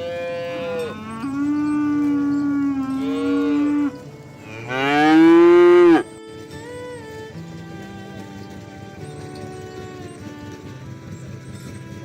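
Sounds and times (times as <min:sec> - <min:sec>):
cattle mooing: 0:00.0 - 0:06.1.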